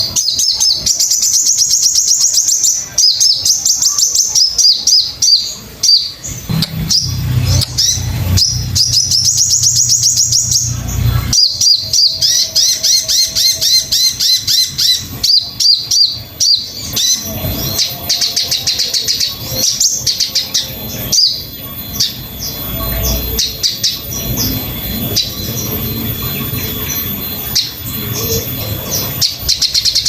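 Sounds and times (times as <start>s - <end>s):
low rumble: 6.4s - 11.6s.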